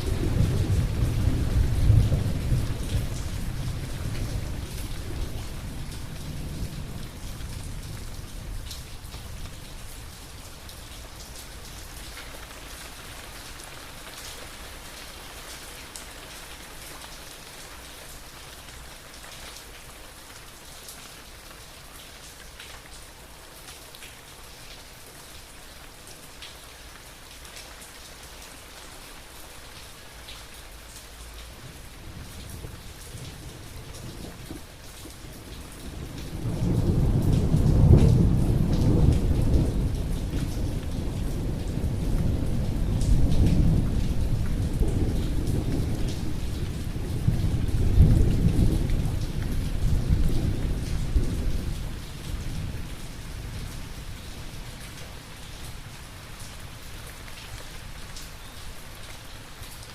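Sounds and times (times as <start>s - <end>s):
thunder rumble: 0.0s - 8.7s
close raindrops: 0.0s - 59.9s
heavy rain falling: 0.0s - 59.9s.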